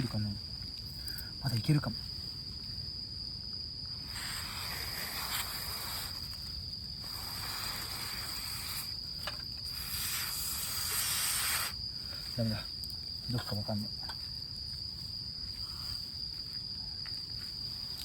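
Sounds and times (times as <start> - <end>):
insects trilling: 0.0 - 18.0
long breathy hisses: 0.9 - 1.4, 4.0 - 6.3, 7.0 - 9.0, 9.6 - 12.4.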